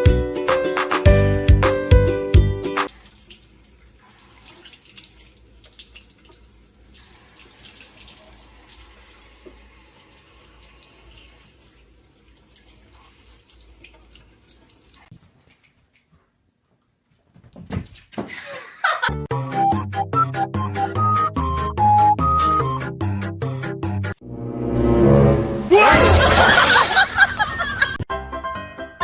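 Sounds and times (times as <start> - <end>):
tap water running into sink: 2.8 - 15.1.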